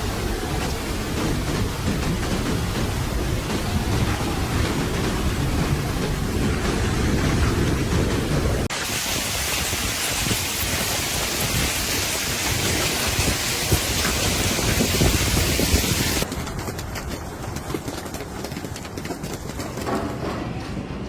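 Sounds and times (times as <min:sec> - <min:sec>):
hail and rain hissing: 0:00.0 - 0:16.3
hailstones striking: 0:00.2 - 0:17.9.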